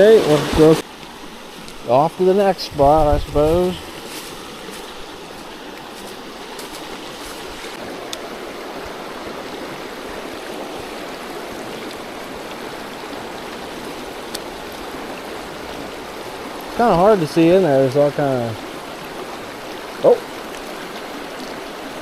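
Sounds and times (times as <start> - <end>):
stream water rushing: 0.0 - 22.0.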